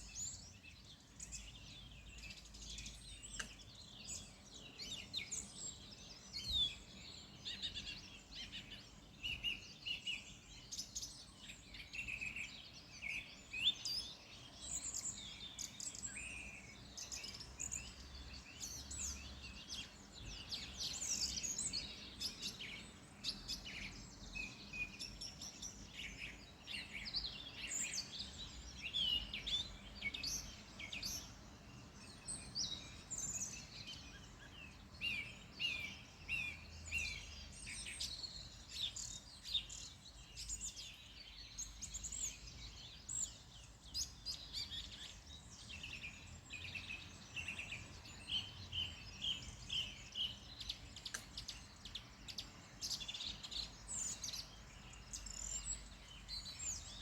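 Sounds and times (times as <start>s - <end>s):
songbirds singing and chirping: 0.0s - 57.0s.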